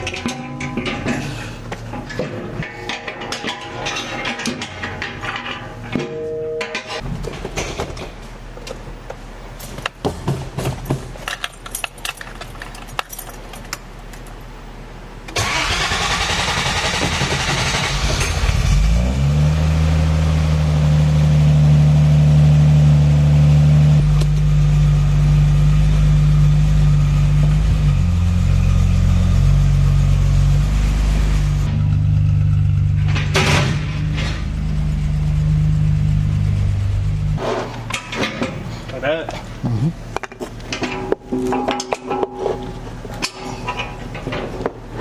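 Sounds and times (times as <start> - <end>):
engine cranking: 15.4 - 18.9
car engine idling: 19.9 - 37.4.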